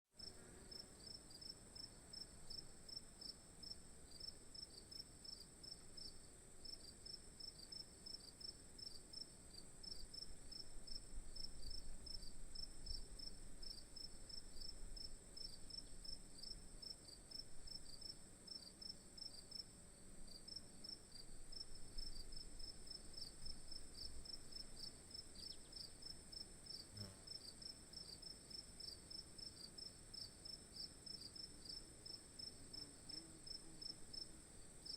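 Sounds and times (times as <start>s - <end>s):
insects buzzing: 0.2s - 34.9s
insects chirping: 17.3s - 34.9s.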